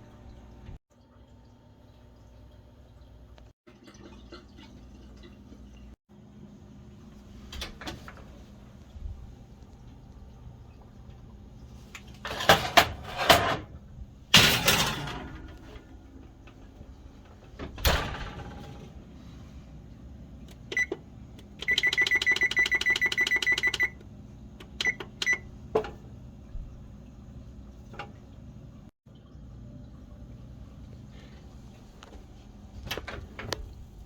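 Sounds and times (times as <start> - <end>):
kitchen things clattering: 12.1 - 15.9
appliance keypad beeps: 20.6 - 21.0, 21.6 - 24.0, 24.6 - 25.5.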